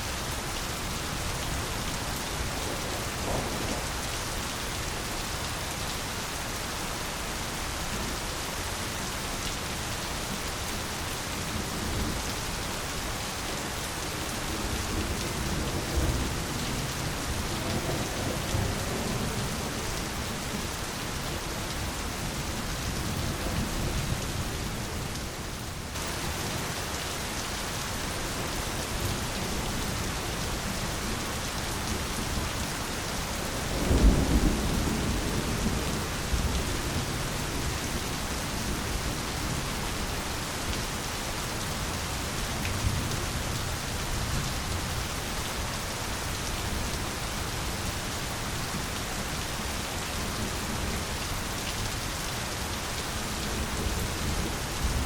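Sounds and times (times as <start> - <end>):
heavy rain falling: 0.0 - 55.0
thunder rumbling: 2.4 - 4.0.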